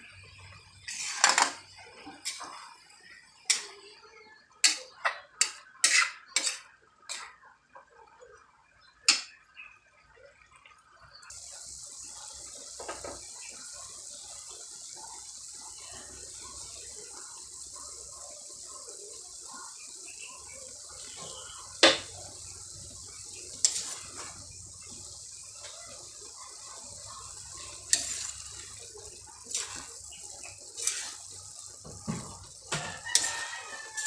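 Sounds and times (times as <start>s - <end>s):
steady high hiss: 11.3s - 34.0s.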